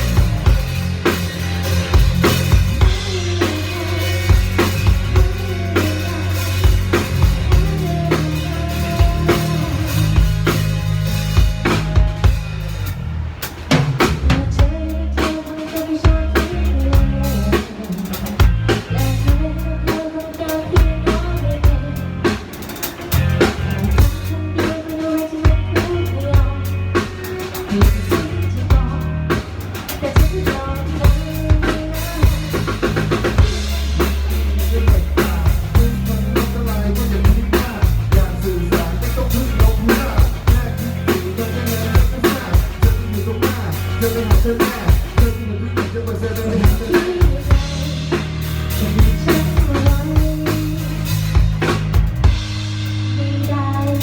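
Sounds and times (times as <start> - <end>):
lead melody: 0.0 - 13.9, 25.5 - 54.0
bass line: 0.0 - 54.0
drum kit beat: 0.0 - 54.0.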